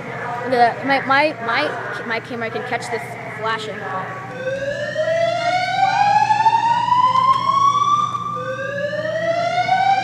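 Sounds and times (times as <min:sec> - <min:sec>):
fire alarm rising whoop: 0:04.3 - 0:10.0.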